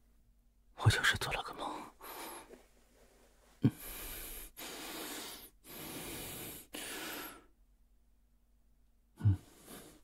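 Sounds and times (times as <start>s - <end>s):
man breathing deeply: 1.9s - 2.6s, 3.6s - 7.6s, 9.2s - 10.0s.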